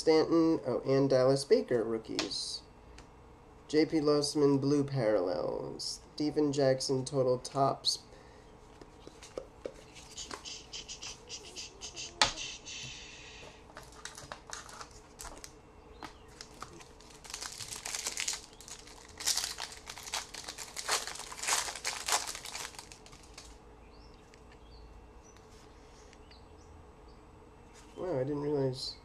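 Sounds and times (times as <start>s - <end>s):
foil wrapper crinkling and tearing: 13.8s - 15.5s, 16.2s - 23.6s.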